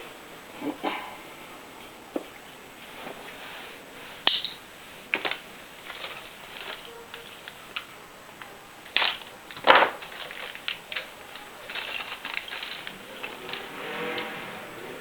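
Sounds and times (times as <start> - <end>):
light clicks and rattling: 4.2 - 14.4.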